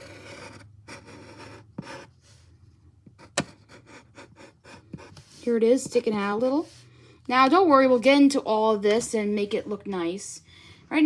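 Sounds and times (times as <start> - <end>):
drawing tool scratching paper: 0.0 - 2.2, 3.2 - 6.0.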